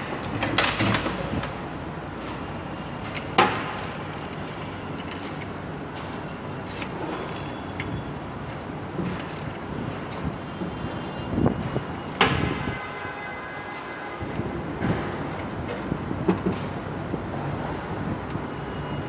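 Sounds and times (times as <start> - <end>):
tools clattering and knocking: 0.1 - 10.3.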